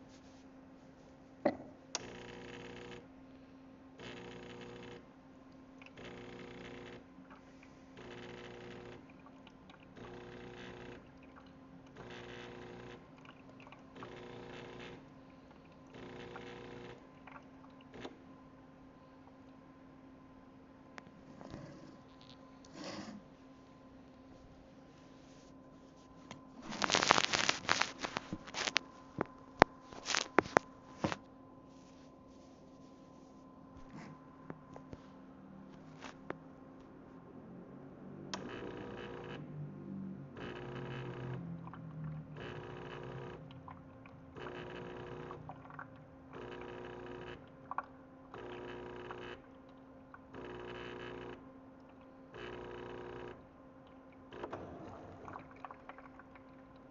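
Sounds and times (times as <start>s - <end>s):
faint steady hum: 0.0s - 56.9s
espresso machine pump buzzing: 1.5s - 3.1s, 4.0s - 5.1s, 5.9s - 7.1s, 8.0s - 9.1s, 10.0s - 11.1s, 11.9s - 13.1s, 13.9s - 15.2s, 15.9s - 17.1s, 26.6s - 28.9s, 38.4s - 39.5s, 40.4s - 41.4s, 42.4s - 43.4s, 44.4s - 47.4s, 48.3s - 49.4s, 50.3s - 51.4s, 52.3s - 53.4s
small objects clicking and rustling: 26.6s - 28.8s, 29.9s - 31.2s.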